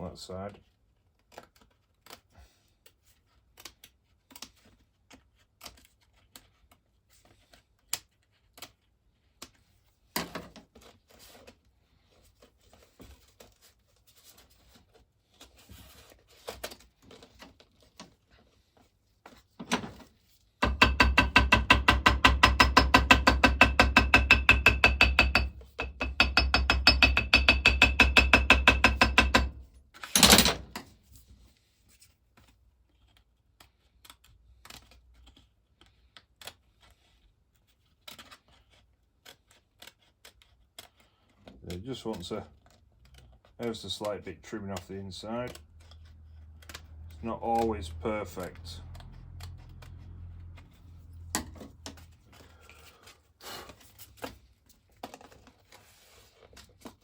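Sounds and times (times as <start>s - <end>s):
scissors snipping cardboard: 36.1s - 41.4s.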